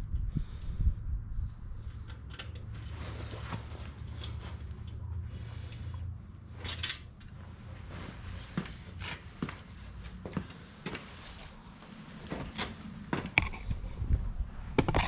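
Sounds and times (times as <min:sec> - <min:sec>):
steady low hum: 0:00.0 - 0:15.0
metal parts creaking and clicking: 0:01.8 - 0:03.1, 0:03.9 - 0:07.5, 0:14.8 - 0:15.0.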